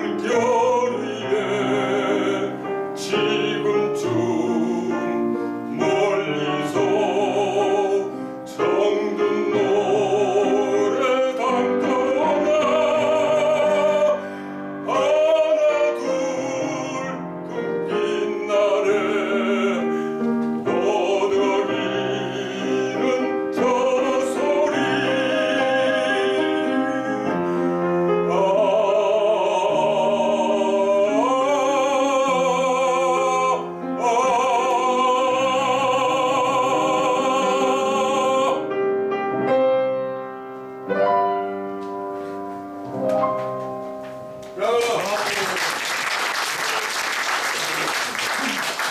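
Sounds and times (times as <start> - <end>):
man singing operatically: 0.0 - 38.7
piano accompaniment: 0.0 - 48.9.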